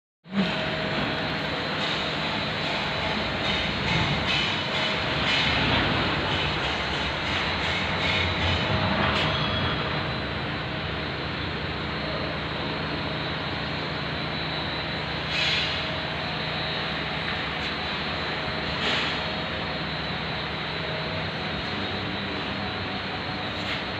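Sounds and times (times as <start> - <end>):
machinery running: 0.3 - 23.9.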